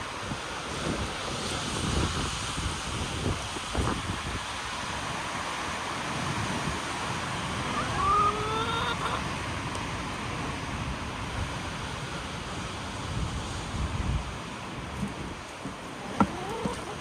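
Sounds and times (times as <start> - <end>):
wind blowing across microphone: 0.0 - 17.0
hen calling: 7.4 - 9.4, 16.0 - 17.0.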